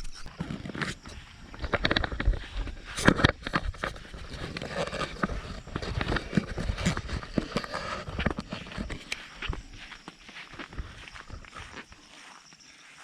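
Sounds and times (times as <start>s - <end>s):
footsteps scuffs and thuds: 0.0s - 13.0s.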